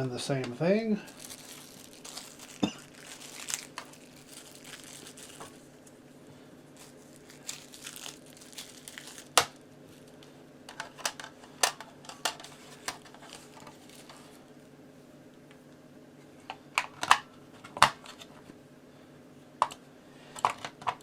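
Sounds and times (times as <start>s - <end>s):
plastic crinkling: 1.0s - 5.8s, 6.7s - 10.2s, 12.5s - 14.3s.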